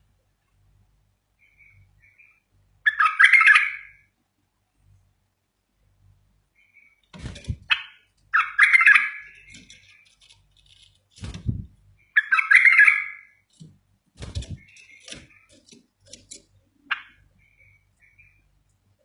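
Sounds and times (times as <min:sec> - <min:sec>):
bird warbling song: 0:01.4 - 0:04.1, 0:06.5 - 0:10.5, 0:11.6 - 0:18.6
dull low thumps: 0:11.2 - 0:11.8.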